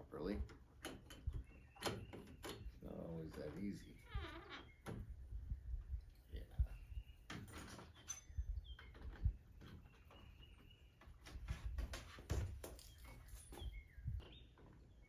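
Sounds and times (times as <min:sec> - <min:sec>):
bird chirps: 0:01.3 - 0:04.9, 0:06.4 - 0:07.4, 0:08.0 - 0:11.4, 0:12.8 - 0:15.0.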